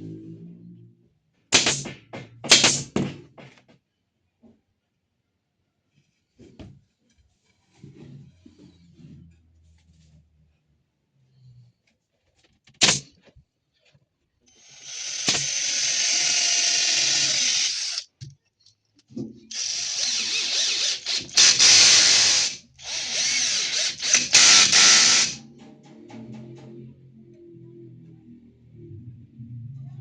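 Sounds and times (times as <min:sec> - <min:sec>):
power drill on wood: 0:14.5 - 0:18.2, 0:19.5 - 0:25.4.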